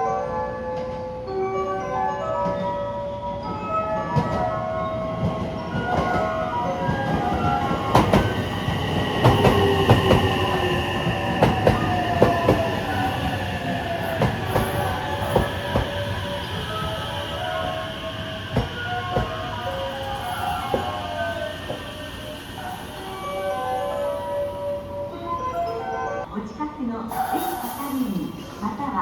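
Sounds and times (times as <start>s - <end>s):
falling whine of slowing train: 0.8s - 26.4s
train wheels clacking: 5.1s - 24.9s
thin high squeal: 27.1s - 28.4s.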